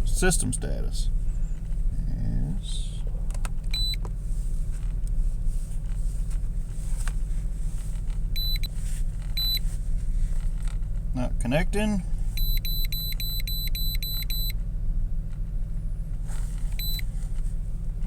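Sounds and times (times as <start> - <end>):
car engine idling: 0.0 - 18.0
high-pitched electronic beeps: 12.4 - 14.5.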